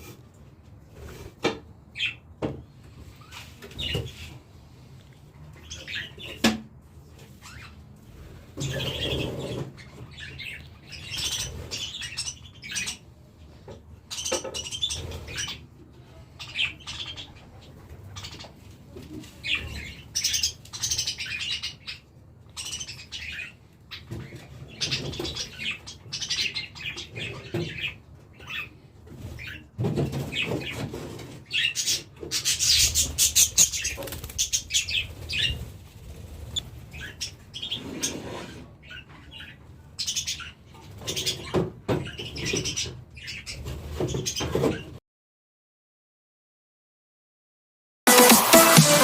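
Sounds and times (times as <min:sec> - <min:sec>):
birds chirping: 0:03.0 - 0:04.4, 0:05.5 - 0:06.5, 0:08.6 - 0:30.9, 0:31.5 - 0:35.7, 0:36.3 - 0:44.9
wings flapping and rustling: 0:32.8 - 0:37.2.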